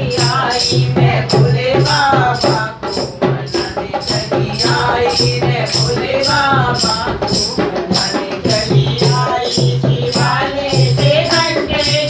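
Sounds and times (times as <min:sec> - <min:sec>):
jingling hand percussion: 0:00.0 - 0:12.0
voices singing: 0:00.0 - 0:12.0.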